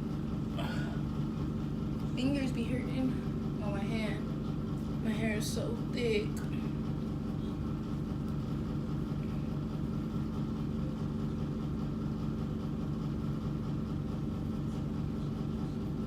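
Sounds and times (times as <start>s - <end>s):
low machine hum: 0.0s - 16.0s.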